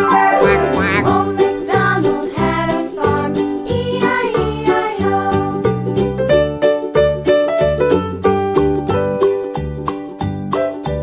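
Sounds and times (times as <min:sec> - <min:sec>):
children's background music: 0:00.0 - 0:06.5.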